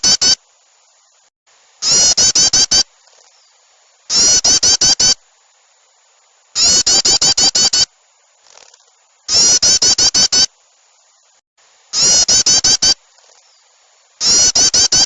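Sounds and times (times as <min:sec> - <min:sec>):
bird alarm chatter playback: 0:00.0 - 0:00.4, 0:01.8 - 0:03.5, 0:04.1 - 0:05.2, 0:06.6 - 0:07.9, 0:08.5 - 0:10.5, 0:12.0 - 0:13.6, 0:14.2 - 0:15.0.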